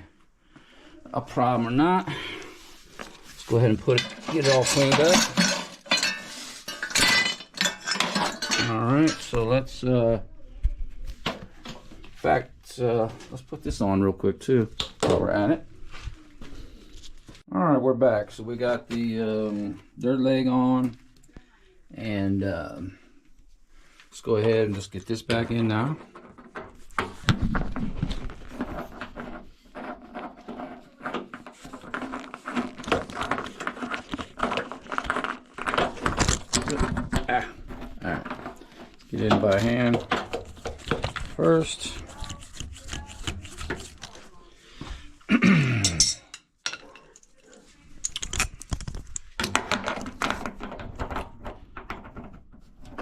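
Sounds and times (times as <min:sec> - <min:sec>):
metal pipe fittings clinking: 0:03.5 - 0:09.4, 0:45.8 - 0:48.6.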